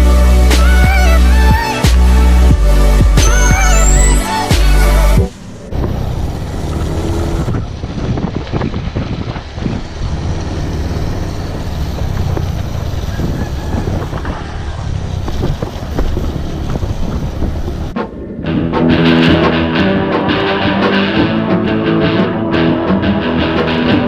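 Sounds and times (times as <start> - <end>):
scooter engine running: 3.2 - 19.0
knocks and rattles: 5.7 - 18.2.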